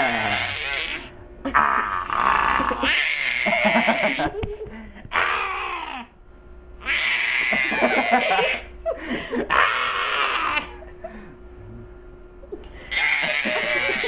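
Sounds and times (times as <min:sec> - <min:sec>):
loud drawn-out cries: 0:00.0 - 0:04.4, 0:05.1 - 0:06.2, 0:06.8 - 0:08.7, 0:09.4 - 0:10.8, 0:12.8 - 0:14.0.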